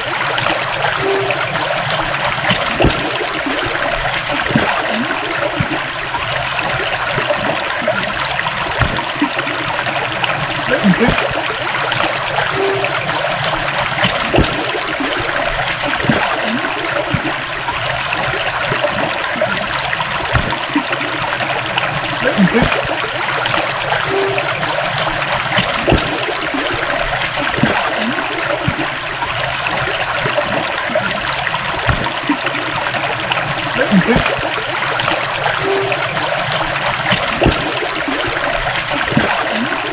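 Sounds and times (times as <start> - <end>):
low water gurgles: 0.0 - 39.9
stream water trickling: 0.0 - 39.9.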